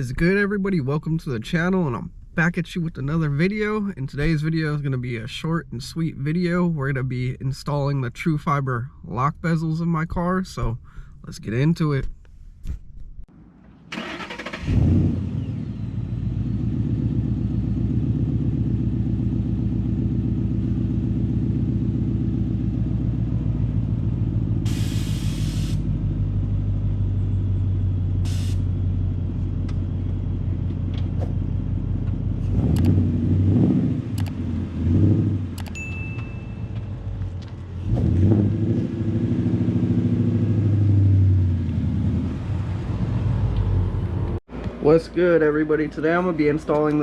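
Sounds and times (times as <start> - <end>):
car engine starting and idling: 13.3 - 47.0
engine throttle blips: 13.9 - 47.0.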